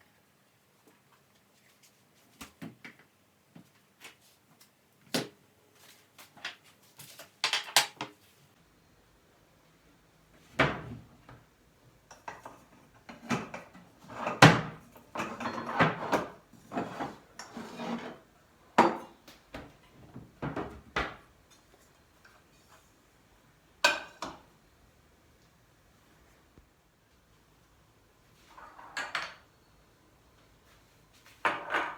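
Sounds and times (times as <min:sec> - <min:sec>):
dishes and utensils clattering: 0:12.1 - 0:18.2, 0:18.8 - 0:19.2.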